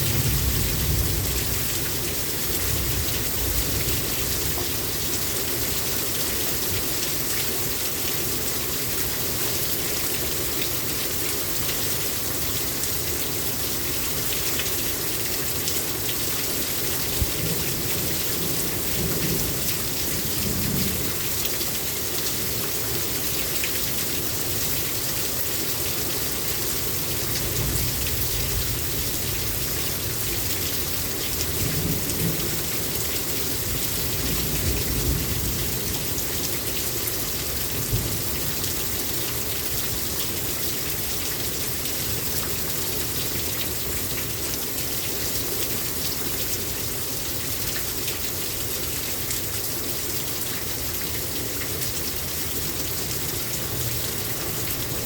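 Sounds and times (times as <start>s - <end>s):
low thunder rumbles: 0.0s - 2.0s
heavy rain pouring: 0.0s - 55.0s.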